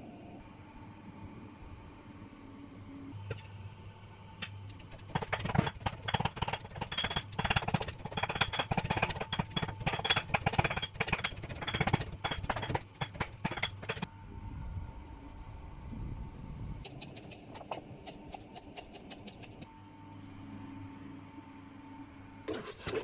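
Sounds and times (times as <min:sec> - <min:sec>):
rapid wooden knocks: 0:05.0 - 0:14.1.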